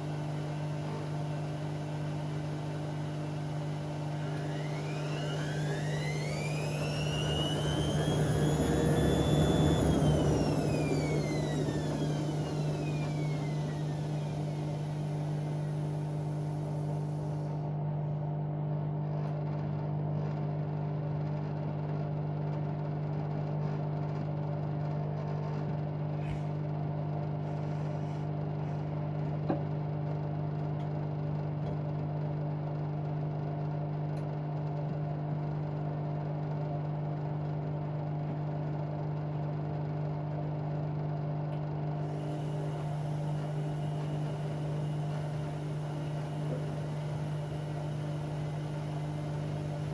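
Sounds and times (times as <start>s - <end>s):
washing machine motor hum: 0.0s - 17.6s, 41.8s - 49.9s.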